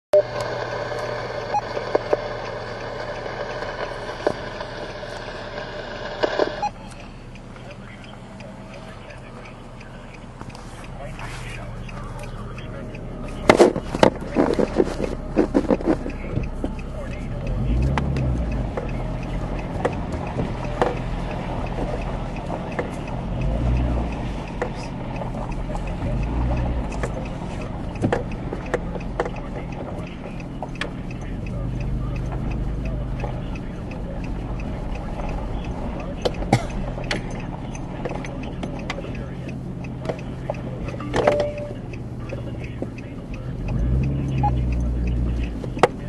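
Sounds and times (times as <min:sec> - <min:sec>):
vehicle engine humming: 0:00.2 - 0:46.0
sharp clicks and knocks: 0:11.5 - 0:46.0.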